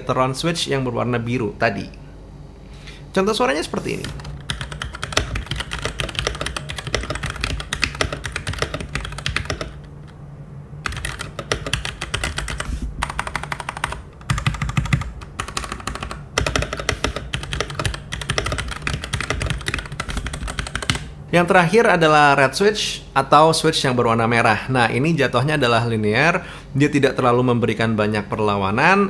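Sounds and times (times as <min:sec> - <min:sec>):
mechanical keyboard key clacks: 0:04.0 - 0:09.8, 0:10.9 - 0:21.0.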